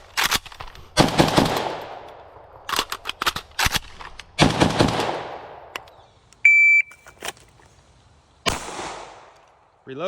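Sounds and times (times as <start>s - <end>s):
gunshots echoing: 4.4s - 5.7s, 8.5s - 9.4s.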